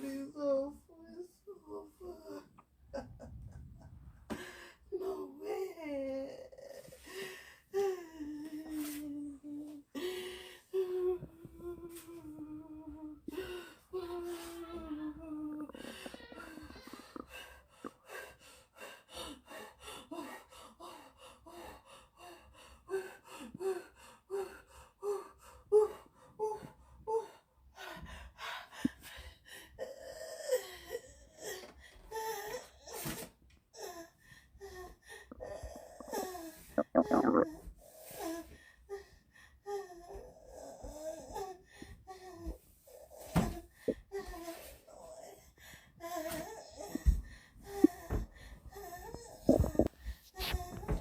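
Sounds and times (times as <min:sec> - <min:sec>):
woman moaning: 0:14.0 - 0:17.4, 0:36.8 - 0:37.5, 0:49.5 - 0:50.6
woman moaning in distress: 0:36.8 - 0:37.5
woman gasping and breathing hard: 0:46.7 - 0:51.0.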